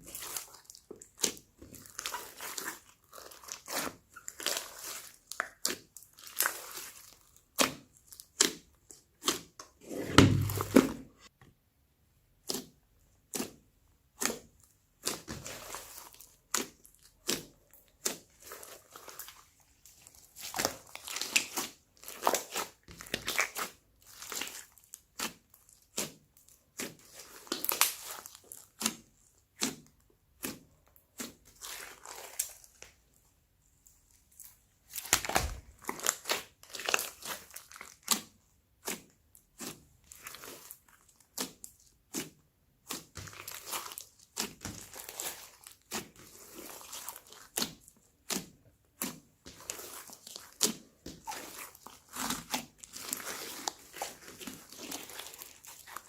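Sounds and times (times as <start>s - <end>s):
slime crackling and popping: 0.0s - 9.6s, 12.4s - 32.9s, 34.3s - 56.0s.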